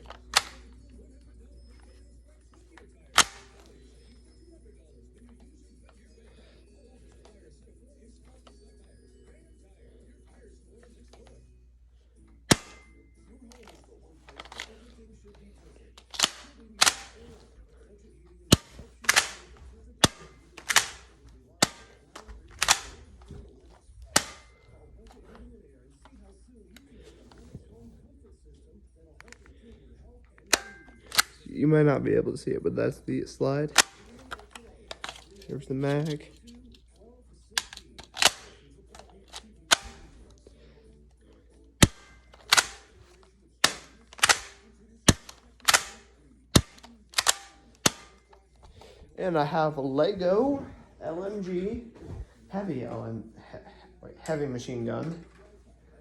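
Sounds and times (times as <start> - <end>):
toy pistol snaps: 0.0 - 0.7, 3.1 - 3.7, 16.0 - 17.3, 18.5 - 23.4, 24.1 - 25.2, 37.6 - 40.2, 41.8 - 48.3.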